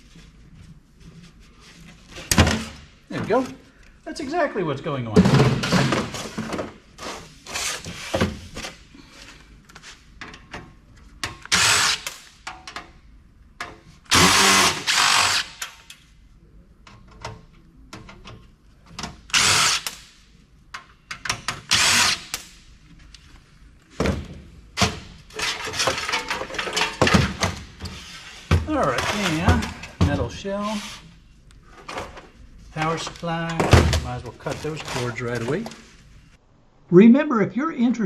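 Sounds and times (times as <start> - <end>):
power drill driver running: 11.5 - 12.1, 14.1 - 15.6, 21.7 - 22.3.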